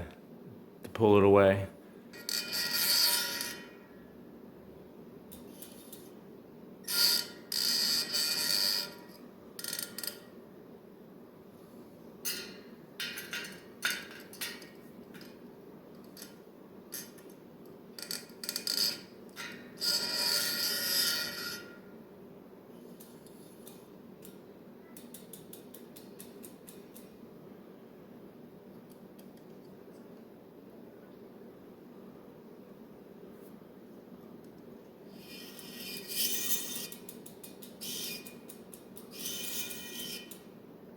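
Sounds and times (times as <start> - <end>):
spoke wrench clicking on metal: 25.0 - 27.1, 36.8 - 39.2.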